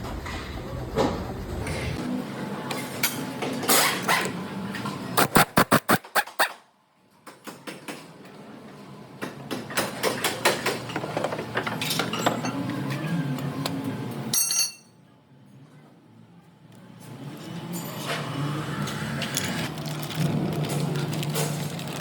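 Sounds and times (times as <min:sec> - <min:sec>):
mechanical hum: 0:00.0 - 0:22.0
metal tools clinking: 0:14.3 - 0:15.0.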